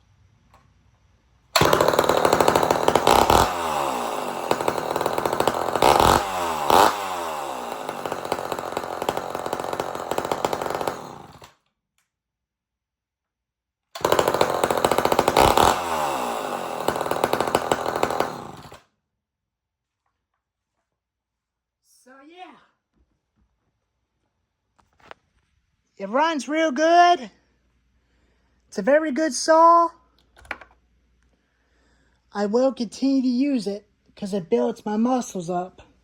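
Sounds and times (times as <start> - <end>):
chainsaw revving: 1.6 - 11.5, 14.0 - 18.8.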